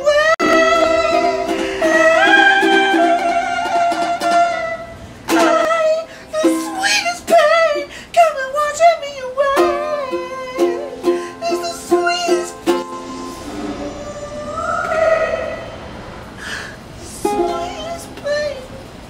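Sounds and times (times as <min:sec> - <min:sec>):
wavering melody with vibrato: 0:00.4 - 0:04.8, 0:10.7 - 0:16.5
ukulele plucked strings: 0:00.4 - 0:07.6, 0:09.4 - 0:13.9, 0:17.2 - 0:18.3.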